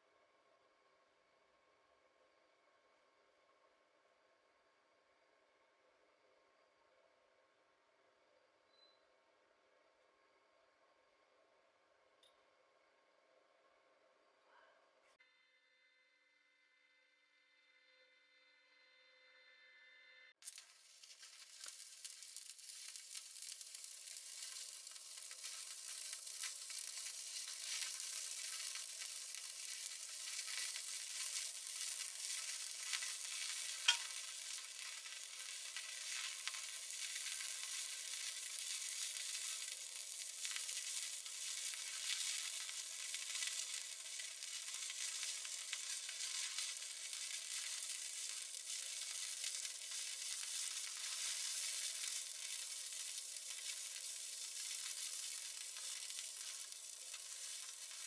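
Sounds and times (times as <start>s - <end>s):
sharp welding pop: 20.4s - 52.1s
welding arc crackling: 20.4s - 58.0s.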